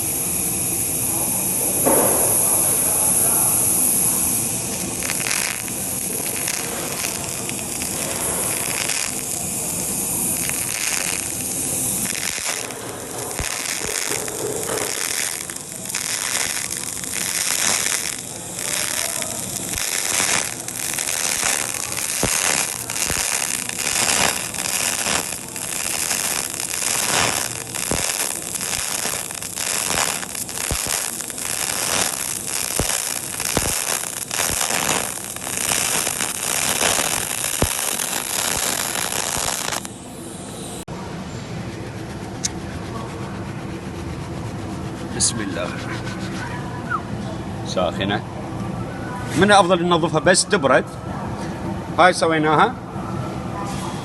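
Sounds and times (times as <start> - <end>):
welding arc hissing: 0.0 - 40.9
welding crackles and pops: 0.0 - 40.9.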